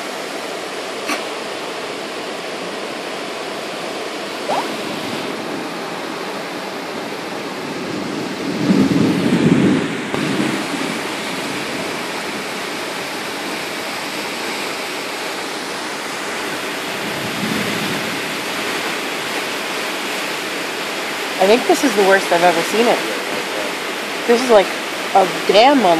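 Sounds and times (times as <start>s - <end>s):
floodwater rushing: 0.0s - 25.9s.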